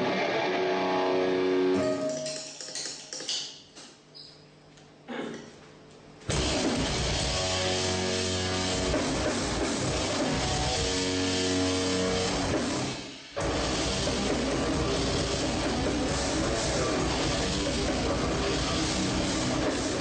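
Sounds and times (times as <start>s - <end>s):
metal band playing loud: 6.3s - 20.0s.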